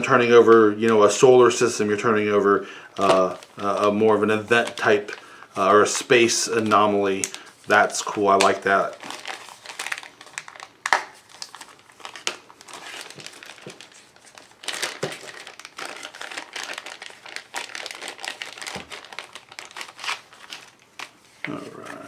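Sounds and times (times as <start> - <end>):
plastic wrapping crinkling: 2.9 - 22.0.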